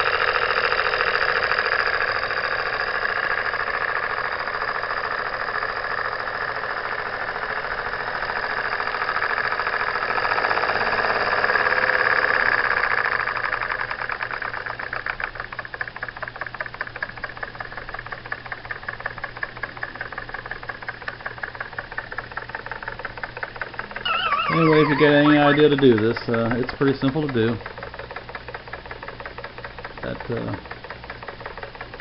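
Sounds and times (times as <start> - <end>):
coffee grinder rattling: 0.0 - 32.0
toy steam engine running: 0.0 - 32.0.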